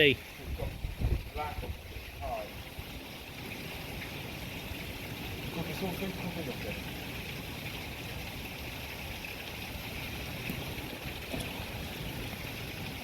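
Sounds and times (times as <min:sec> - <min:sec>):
constant hiss: 0:00.0 - 0:13.0
wind buffeting microphone: 0:00.3 - 0:05.6.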